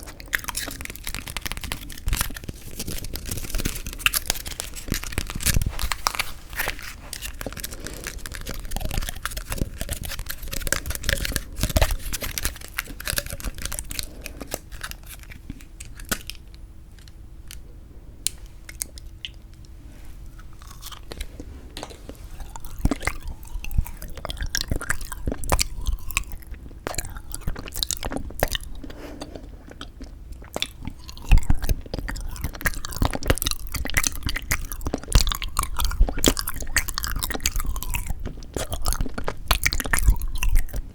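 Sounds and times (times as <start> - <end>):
crunchy chewing: 0.0 - 17.6, 18.2 - 40.9
wet mouth clicks: 18.7 - 19.7.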